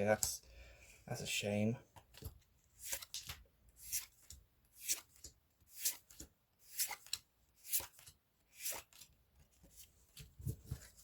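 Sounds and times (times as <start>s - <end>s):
cards sliding with papery swish: 2.8s - 9.1s.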